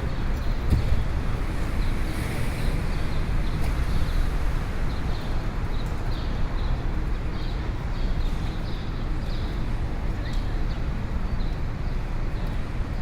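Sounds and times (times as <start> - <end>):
low rumble of traffic: 0.0 - 13.0.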